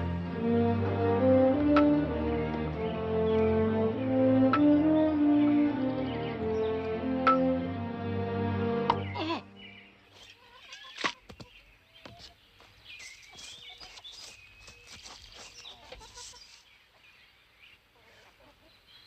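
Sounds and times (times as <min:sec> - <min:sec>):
birds chirping: 0:00.0 - 0:19.0
chickens clucking: 0:17.9 - 0:18.9.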